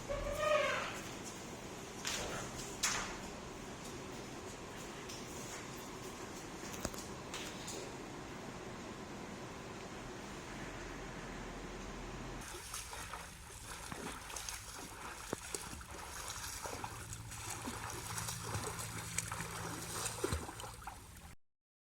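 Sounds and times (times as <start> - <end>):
paddle splashing in water: 12.4 - 21.3.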